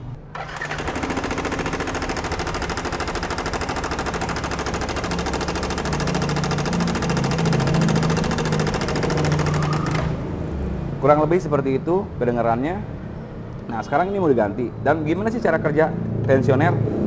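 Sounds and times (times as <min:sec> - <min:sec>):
scooter engine running: 0:00.3 - 0:10.2.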